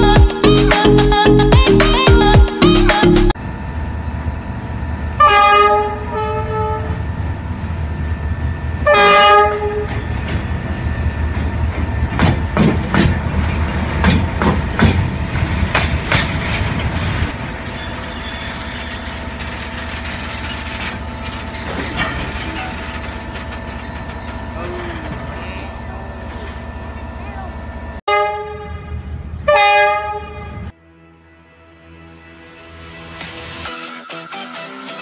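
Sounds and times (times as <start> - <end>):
wheels rumbling over track: 3.3 - 30.8
model train horn: 5.2 - 7.0, 8.8 - 9.9, 28.1 - 30.7.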